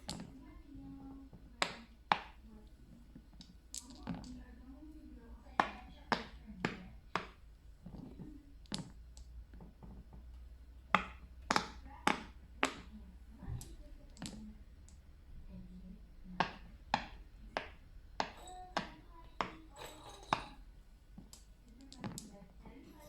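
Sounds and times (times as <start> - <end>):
fidget toys clicking and popping: 3.1 - 4.5, 10.9 - 15.0, 21.2 - 22.5.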